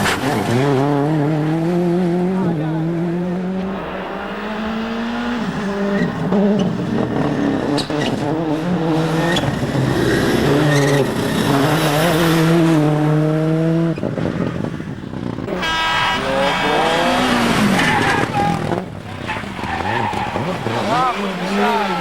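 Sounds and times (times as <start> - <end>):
rally car engine revving: 0.0 - 22.0.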